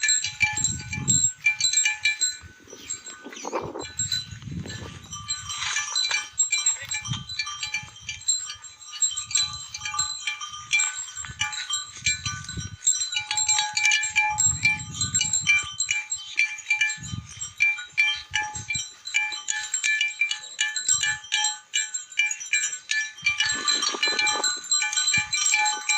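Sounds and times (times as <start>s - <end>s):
metal neck bells clinking: 0.0s - 25.9s
animals making low sounds: 2.5s - 5.0s.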